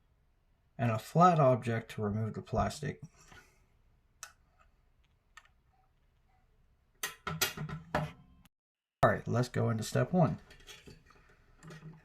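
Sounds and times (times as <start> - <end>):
tools clattering on hard surface: 10.3 - 12.0.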